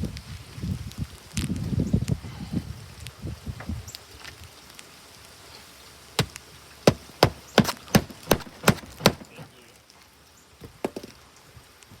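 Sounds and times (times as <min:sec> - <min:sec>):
sharp knocks: 0:06.2 - 0:09.4.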